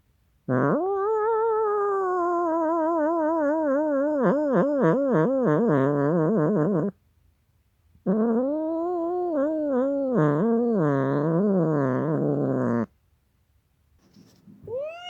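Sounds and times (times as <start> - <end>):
angry cat yowling: 14.7 - 15.0.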